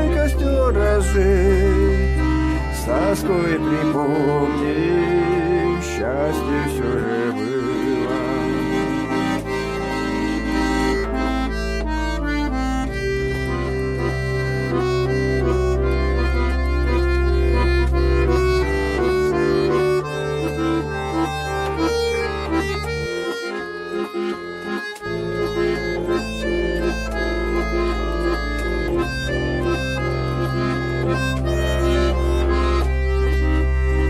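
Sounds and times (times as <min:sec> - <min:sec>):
held bass notes: 0:00.0 - 0:34.0
instrumental melody: 0:00.0 - 0:34.0.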